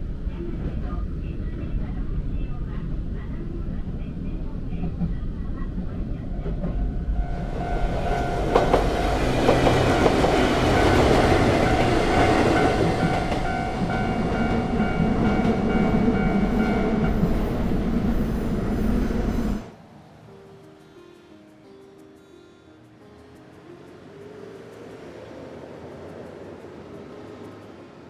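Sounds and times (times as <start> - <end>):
train wheels clicking on rail joints: 4.7 - 17.6
crossing warning bell ringing: 6.4 - 17.8.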